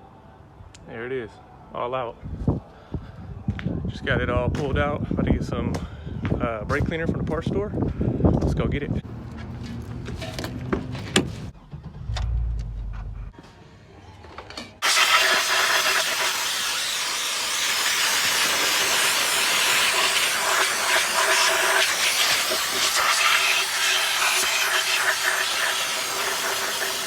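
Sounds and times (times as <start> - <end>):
aerosol spray hissing: 14.8 - 27.0.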